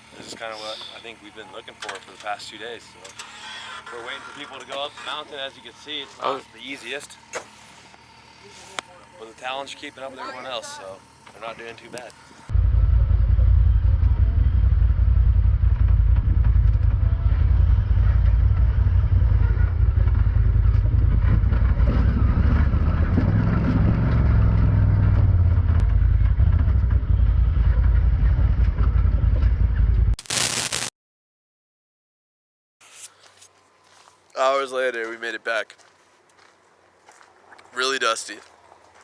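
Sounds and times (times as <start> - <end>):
off-road vehicle engine rumble: 0.0 - 30.2.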